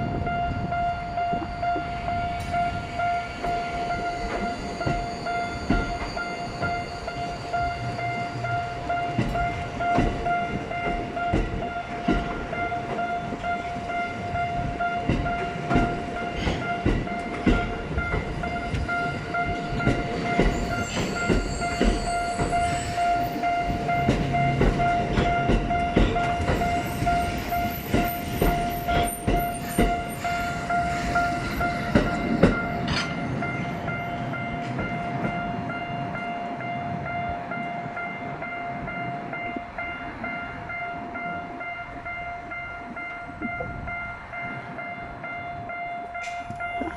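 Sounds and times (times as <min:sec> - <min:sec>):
crossing warning bell ringing: 0:00.0 - 0:46.9
train wheels clanking over rail joints: 0:01.4 - 0:35.8.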